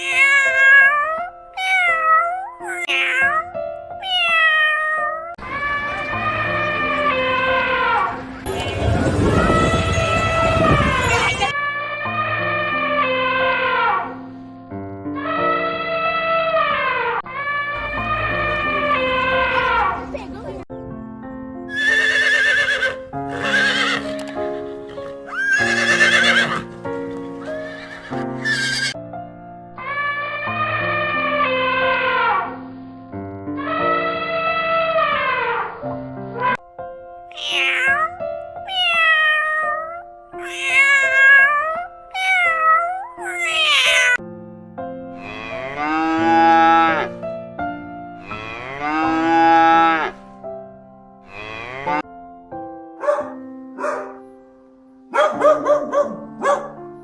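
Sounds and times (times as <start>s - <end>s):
cat meowing: 0.0s - 7.6s, 37.3s - 44.2s
background music: 0.0s - 57.0s
cow mooing: 5.4s - 11.5s, 17.8s - 20.0s, 45.2s - 47.2s, 48.2s - 50.2s, 51.2s - 52.1s
horse whinnying: 5.4s - 11.5s, 21.7s - 26.7s, 27.4s - 29.0s, 40.4s - 41.5s.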